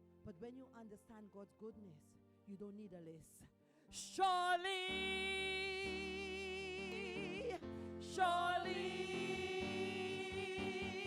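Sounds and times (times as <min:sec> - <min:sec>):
woman singing with vibrato: 0:04.0 - 0:11.0.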